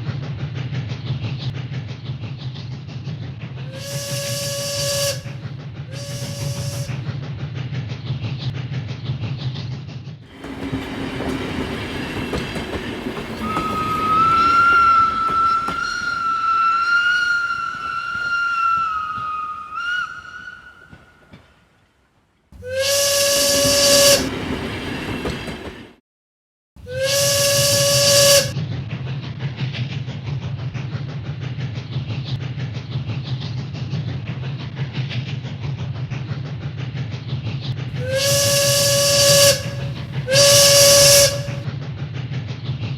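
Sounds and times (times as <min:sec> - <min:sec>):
loud whistle blasts: 0:03.7 - 0:05.3, 0:05.9 - 0:07.0, 0:13.4 - 0:21.2, 0:22.6 - 0:24.3, 0:26.9 - 0:28.6, 0:38.0 - 0:41.6
wavering high whistle: 0:06.0 - 0:06.9, 0:13.3 - 0:21.3, 0:22.7 - 0:24.3, 0:38.0 - 0:41.6.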